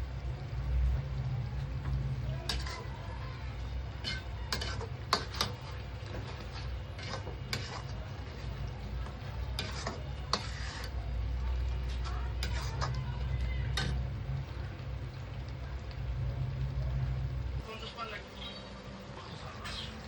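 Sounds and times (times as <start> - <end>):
low rumble: 0.0 - 5.2, 11.0 - 17.8.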